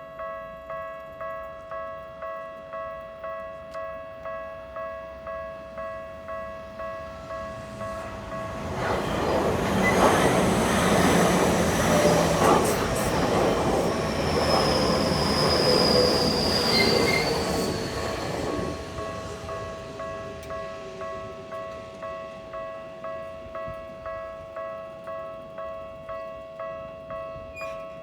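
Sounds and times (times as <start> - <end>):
train wheel and rail noise: 0.0 - 28.0
crossing warning bell dinging: 0.1 - 28.0
high wheel squeal: 7.8 - 19.3.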